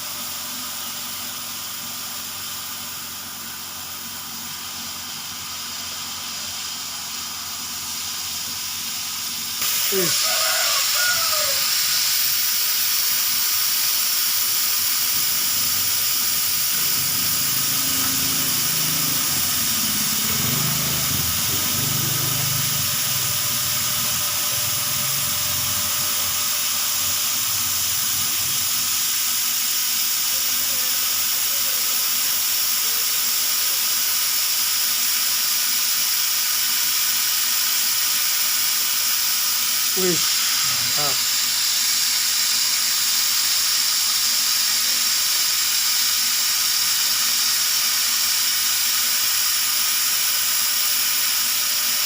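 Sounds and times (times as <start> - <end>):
laser cutter hissing: 0.0 - 52.0
motors humming: 9.6 - 29.7, 39.9 - 41.5.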